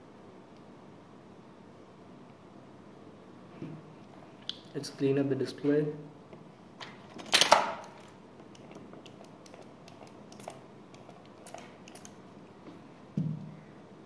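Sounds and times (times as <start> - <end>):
handling clicks and taps: 8.4 - 12.2.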